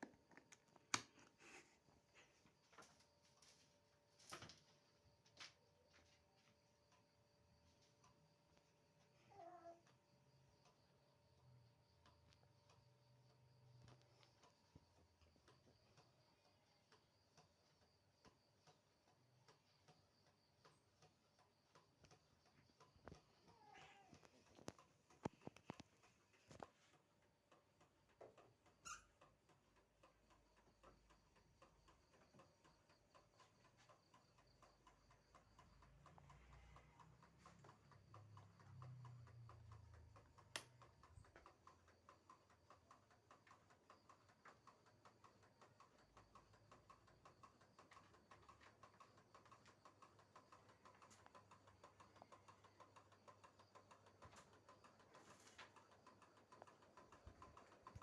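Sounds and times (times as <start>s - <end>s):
ceiling fan ticking and humming: 0.0s - 58.0s
sharp click: 40.5s - 40.8s.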